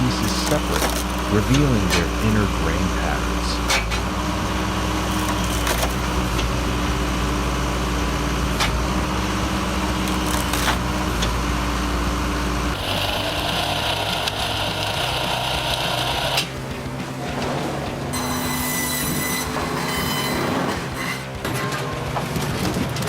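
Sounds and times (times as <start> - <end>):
wood cracking apart: 0.0 - 2.3, 3.6 - 18.2
log splitter engine running: 0.0 - 23.0.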